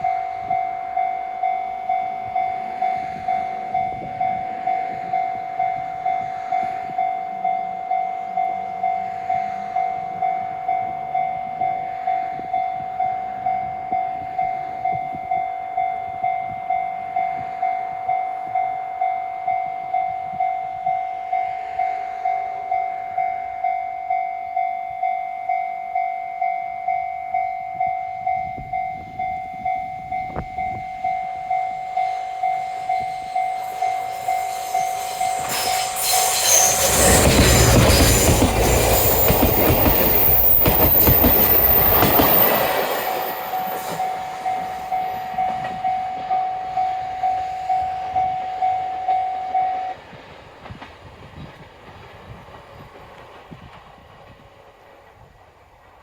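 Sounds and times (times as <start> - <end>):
train wheels clattering: 33.7 - 46.4.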